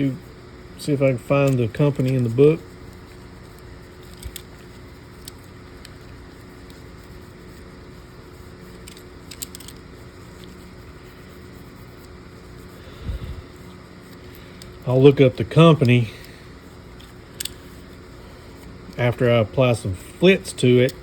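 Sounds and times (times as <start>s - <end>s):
low background hum: 0.0s - 21.0s
light handling clicks: 8.7s - 9.8s, 17.0s - 17.6s.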